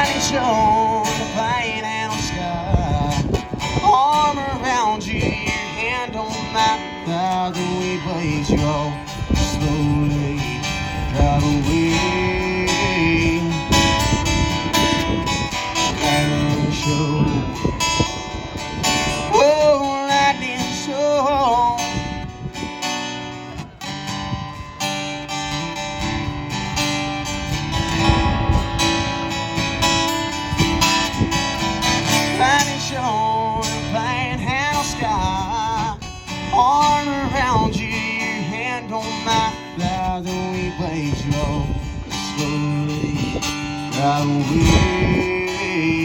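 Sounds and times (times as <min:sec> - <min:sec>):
country band playing: 0:00.0 - 0:46.0
strummed acoustic guitar: 0:00.0 - 0:46.0
lead melody with bent notes: 0:22.2 - 0:34.3.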